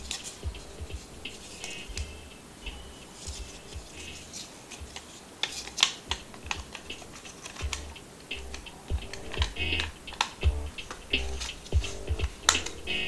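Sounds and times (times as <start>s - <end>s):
sharp clicks and taps: 4.8s - 13.0s
low rumbling handling noise: 6.1s - 13.0s.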